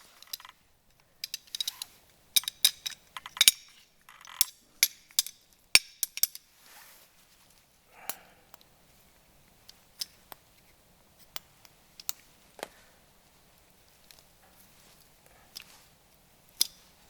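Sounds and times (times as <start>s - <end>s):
tools and metal parts clinking: 0.0s - 0.6s, 1.2s - 6.5s.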